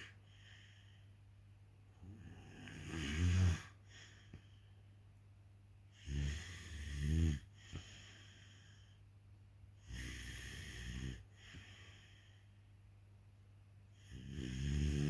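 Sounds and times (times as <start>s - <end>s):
person snoring: 2.0s - 4.0s, 6.0s - 8.3s, 9.8s - 11.7s, 14.0s - 15.0s.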